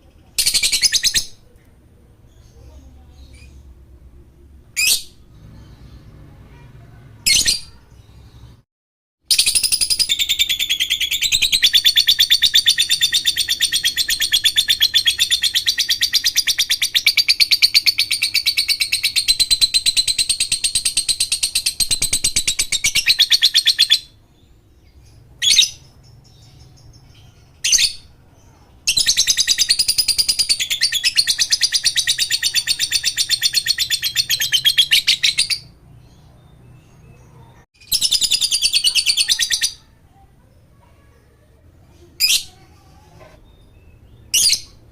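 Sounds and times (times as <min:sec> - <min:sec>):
bird chirps: 0:00.0 - 0:03.8, 0:09.3 - 0:41.4, 0:42.2 - 0:44.9
bird fast high chattering: 0:09.3 - 0:24.1, 0:27.6 - 0:35.8, 0:37.8 - 0:40.0.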